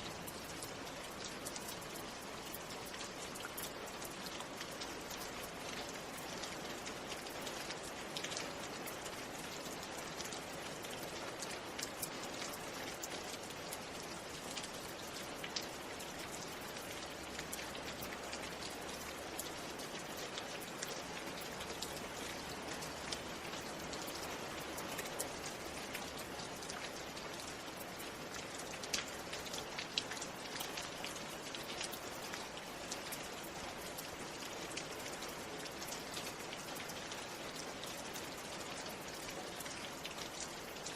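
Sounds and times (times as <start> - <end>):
raindrops ticking: 0.0 - 40.9
steady rain hiss: 0.0 - 40.9.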